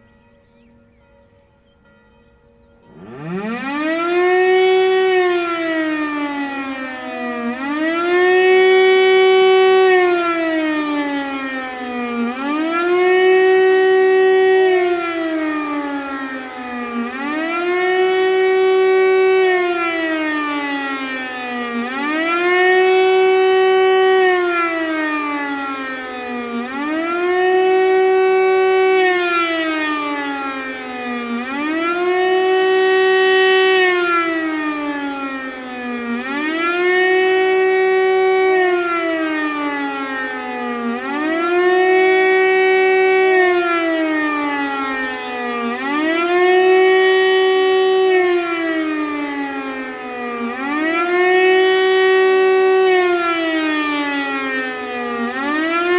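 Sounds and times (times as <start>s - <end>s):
motor siren wailing: 2.8s - 55.9s.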